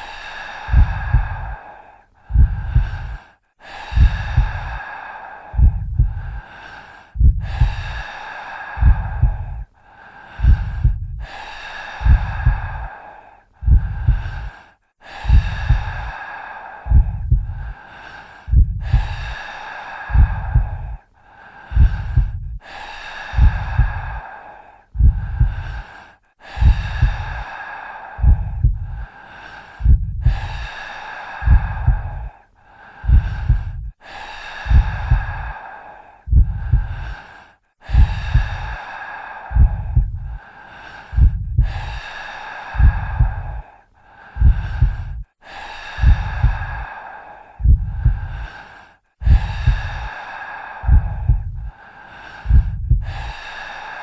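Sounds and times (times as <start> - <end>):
heavy breathing: 0.0 - 54.0
heartbeat thumps: 0.6 - 1.6, 2.3 - 3.2, 3.8 - 4.8, 5.5 - 6.4, 7.2 - 8.1, 8.8 - 9.7, 10.4 - 11.4, 12.0 - 12.9, 13.6 - 14.5, 15.2 - 16.1, 16.9 - 17.8, 18.5 - 19.4, 20.1 - 21.0, 21.7 - 22.6, 23.3 - 24.2, 25.0 - 25.8, 26.5 - 27.4, 28.2 - 29.1, 29.8 - 30.7, 31.4 - 32.3, 33.0 - 34.0, 34.6 - 35.5, 36.3 - 37.2, 37.9 - 38.8, 39.5 - 40.4, 41.1 - 42.0, 42.8 - 43.6, 44.4 - 45.3, 45.9 - 46.8, 47.6 - 48.5, 49.2 - 50.1, 50.8 - 51.7, 52.4 - 53.3.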